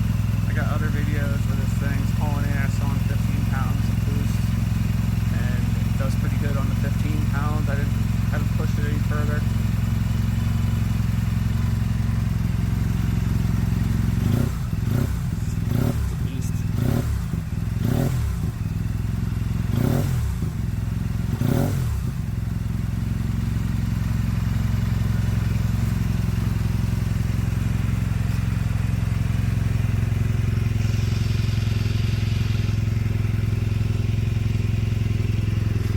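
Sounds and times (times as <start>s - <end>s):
scooter engine revving and idling: 0.0s - 35.9s.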